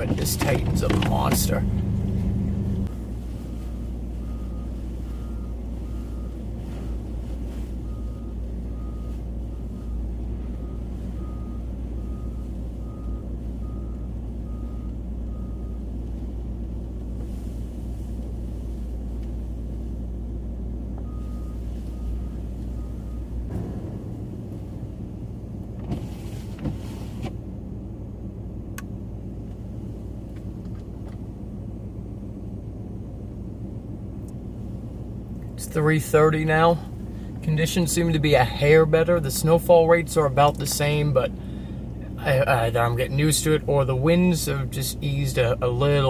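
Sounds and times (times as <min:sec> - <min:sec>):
truck engine and tyres rumbling: 0:00.0 - 0:46.0
rustle: 0:02.8 - 0:10.0, 0:25.9 - 0:27.4
click: 0:28.7 - 0:28.9.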